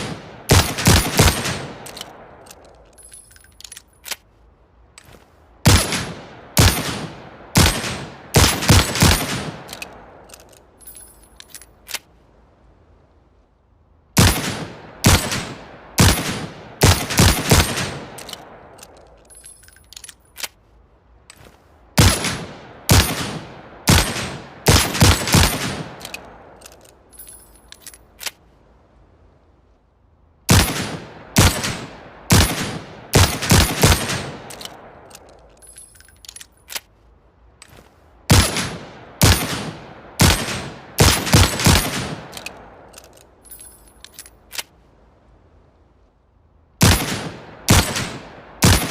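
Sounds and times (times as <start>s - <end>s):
light metallic clicks: 1.8s - 5.3s, 16.9s - 21.6s, 25.3s - 28.4s, 33.2s - 37.0s, 41.1s - 44.8s.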